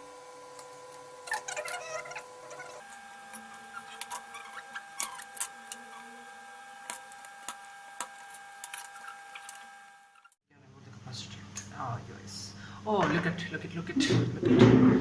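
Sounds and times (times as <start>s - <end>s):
desoldering clicks and scratches: 2.5s - 10.4s.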